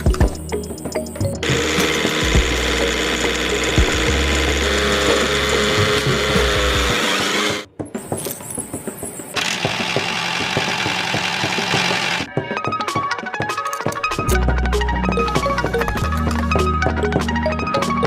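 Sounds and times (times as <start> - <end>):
small motor whirring: 1.5 - 7.7, 9.4 - 12.3
rapid clicking and rattling: 9.4 - 12.3.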